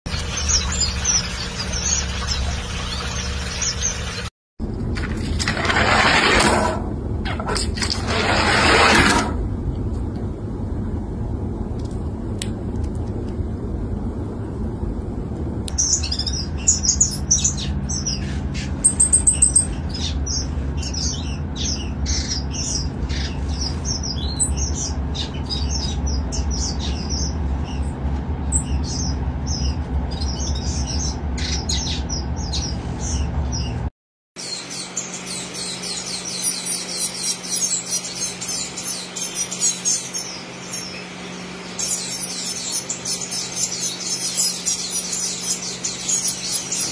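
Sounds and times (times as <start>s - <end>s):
steady low rumble: 6.6s - 33.9s
finches chirping: 15.7s - 27.9s, 28.5s - 33.8s, 34.4s - 46.9s.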